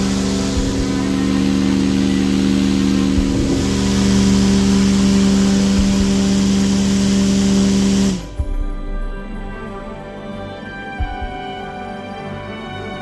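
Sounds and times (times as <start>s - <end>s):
rush of air: 0.0s - 8.4s
fan motor humming: 0.0s - 8.5s
music: 0.0s - 13.0s.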